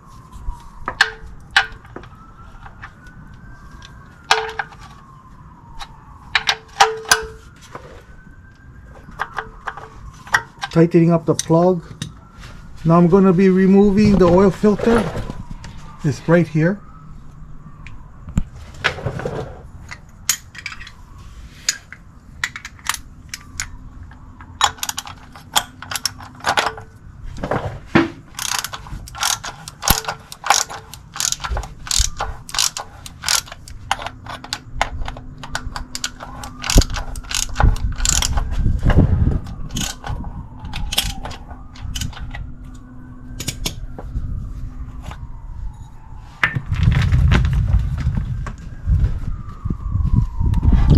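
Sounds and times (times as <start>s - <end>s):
ratchet clicking: 28.3s - 34.6s, 35.9s - 38.3s.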